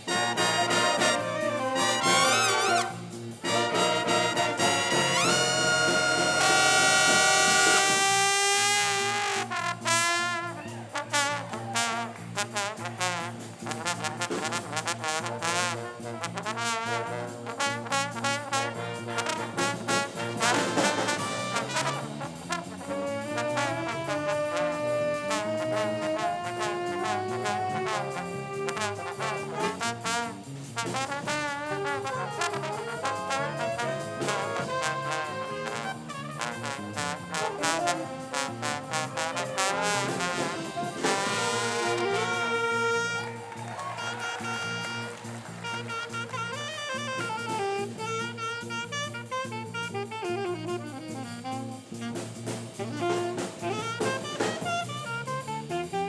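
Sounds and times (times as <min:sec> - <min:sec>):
percussion beat: 0:00.0 - 0:08.3, 0:18.2 - 0:22.8, 0:28.4 - 0:48.4, 0:52.8 - 0:56.0
brass music: 0:00.0 - 0:56.0.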